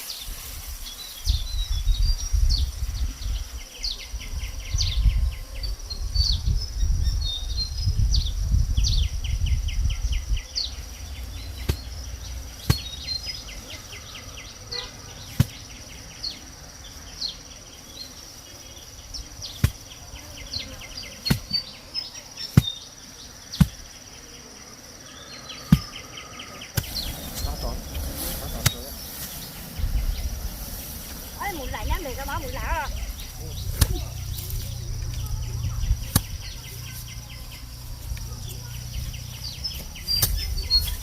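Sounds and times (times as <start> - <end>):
bird chirps: 0.0 - 41.0
insects chirping and buzzing: 0.0 - 41.0
low rumble: 4.3 - 14.6, 25.2 - 41.0.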